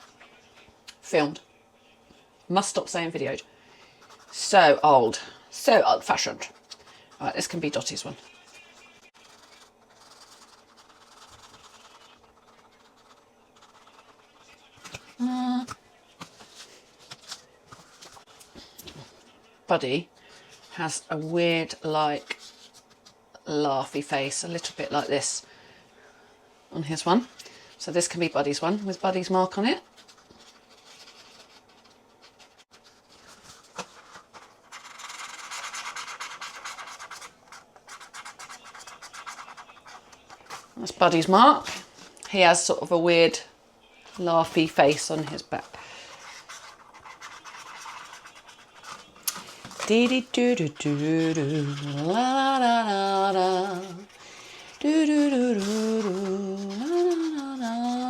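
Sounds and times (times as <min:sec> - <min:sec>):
marker scratching on paper plate: 0:04.0 - 0:04.9, 0:05.7 - 0:15.2, 0:27.9 - 0:41.7, 0:44.1 - 0:58.0.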